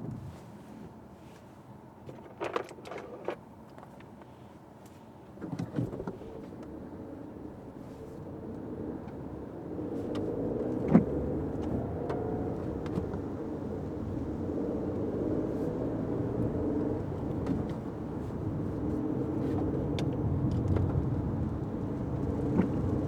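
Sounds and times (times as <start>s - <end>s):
car road and engine noise: 0.0s - 23.0s.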